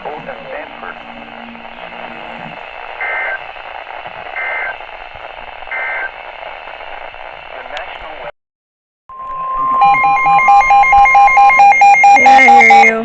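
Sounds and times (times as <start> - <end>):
radio hiss: 0.0 - 8.3, 9.2 - 13.0
warbling digital data tones: 9.1 - 13.0.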